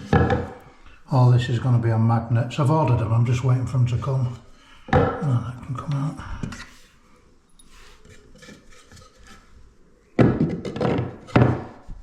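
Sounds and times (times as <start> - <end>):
wooden panel thunks: 0.0 - 0.6, 10.2 - 11.8.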